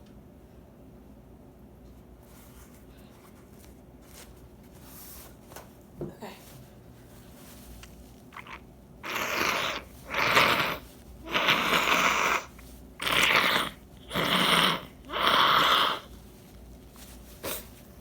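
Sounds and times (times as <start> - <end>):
person blowing nose: 8.4 - 16.2, 17.4 - 17.8.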